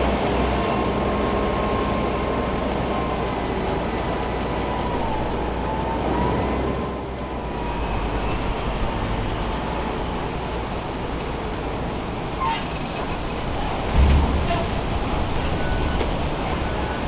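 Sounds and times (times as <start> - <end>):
heavy vehicle engine rumble: 0.0 - 17.0
road noise: 0.0 - 17.0
heavy thud: 13.9 - 16.4.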